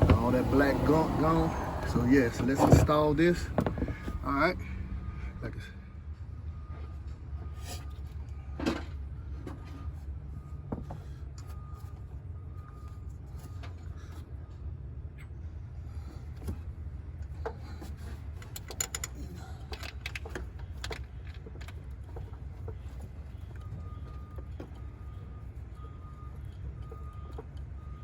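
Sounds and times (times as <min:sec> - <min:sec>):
steady low rumble: 0:00.0 - 0:06.4.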